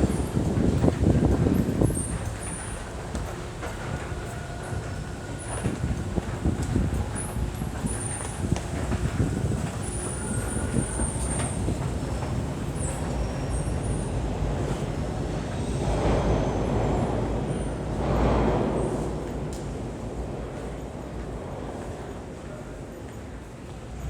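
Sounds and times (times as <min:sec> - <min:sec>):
subway train rumbling: 0:00.0 - 0:24.0.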